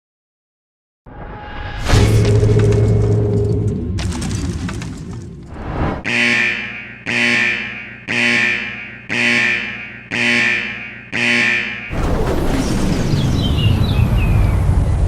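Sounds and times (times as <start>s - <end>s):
ringing alarm tone: 6.0s - 12.0s
loud noisy rumble: 11.9s - 15.0s.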